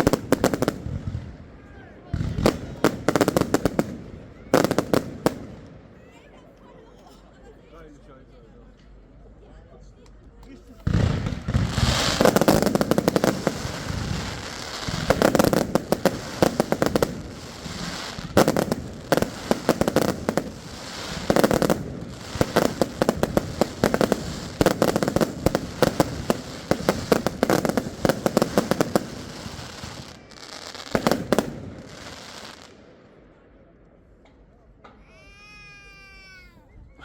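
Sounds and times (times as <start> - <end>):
fireworks bangs and crackles: 0.0 - 6.0, 10.8 - 33.5.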